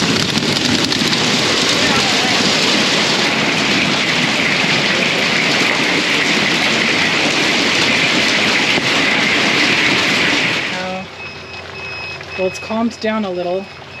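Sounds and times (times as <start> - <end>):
hail and rain pelting: 0.0 - 14.0.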